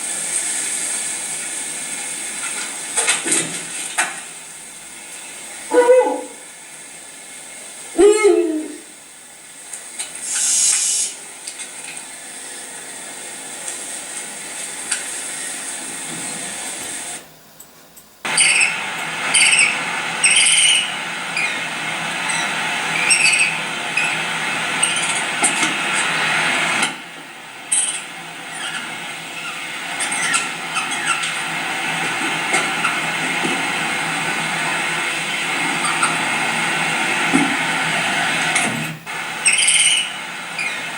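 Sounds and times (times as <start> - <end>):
owl hissing: 5.7 - 6.5, 7.9 - 8.9, 10.2 - 11.3, 18.3 - 26.9, 27.7 - 33.2, 34.3 - 37.1, 39.1 - 40.9
owl shrill screeches: 10.2 - 11.2, 18.3 - 21.7, 22.3 - 24.2, 27.8 - 31.4, 39.4 - 40.9.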